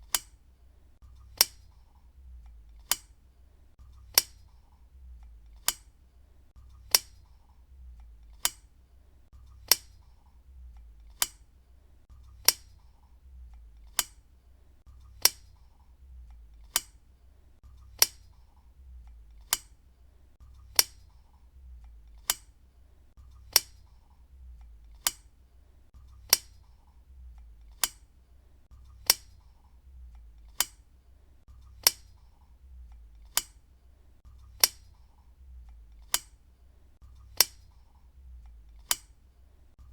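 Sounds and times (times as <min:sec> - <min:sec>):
desk lamp switch clicking: 0:00.0 - 0:00.4, 0:01.2 - 0:03.2, 0:04.0 - 0:06.0, 0:06.7 - 0:08.8, 0:09.5 - 0:11.6, 0:12.2 - 0:14.3, 0:15.0 - 0:17.0, 0:17.9 - 0:19.8, 0:20.6 - 0:22.6, 0:23.4 - 0:25.4, 0:26.1 - 0:28.1, 0:28.9 - 0:30.9, 0:31.7 - 0:33.7, 0:34.4 - 0:36.4, 0:37.2 - 0:39.2.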